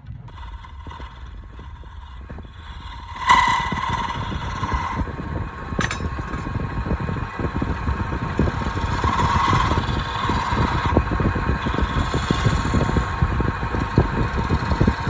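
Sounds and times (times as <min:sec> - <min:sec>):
wood lathe rattling and whining: 0:00.0 - 0:15.0.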